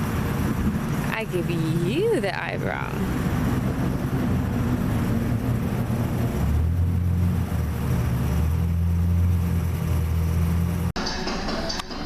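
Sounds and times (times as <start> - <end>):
low rumble with droning hum: 0.0 - 10.9.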